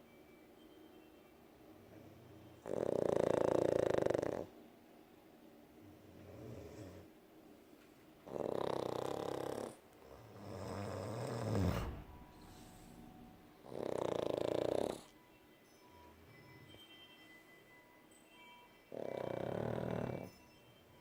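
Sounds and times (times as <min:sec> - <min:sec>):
person snoring: 0:02.6 - 0:04.5, 0:08.3 - 0:13.0, 0:13.6 - 0:15.1, 0:18.9 - 0:20.4.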